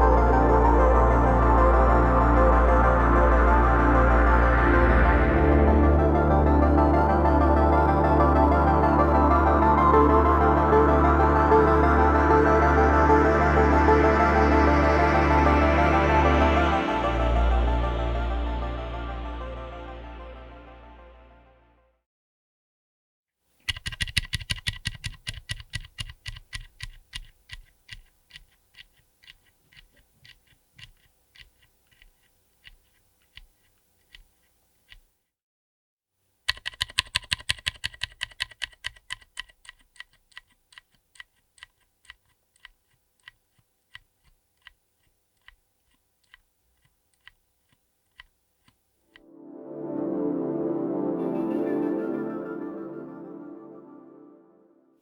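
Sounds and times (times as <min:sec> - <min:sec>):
mechanical keyboard typing: 0:23.6 - 0:35.0, 0:36.5 - 0:48.4.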